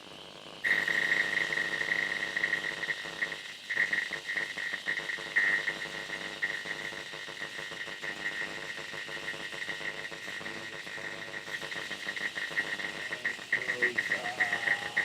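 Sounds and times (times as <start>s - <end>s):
synthesizer pulsing noise drone: 0.6s - 15.0s
high whine: 9.6s - 15.0s.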